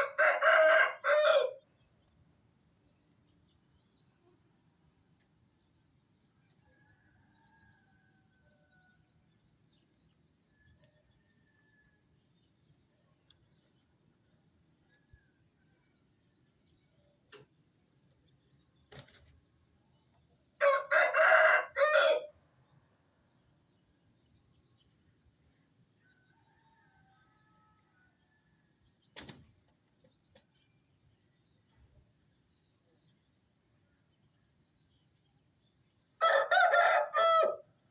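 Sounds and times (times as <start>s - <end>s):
distant roosters crowing: 0.0s - 1.6s, 20.6s - 22.4s, 36.2s - 37.7s
rooster crowing loudly: 0.0s - 1.6s, 20.6s - 22.3s, 36.2s - 37.6s
crickets chirping: 0.0s - 37.9s.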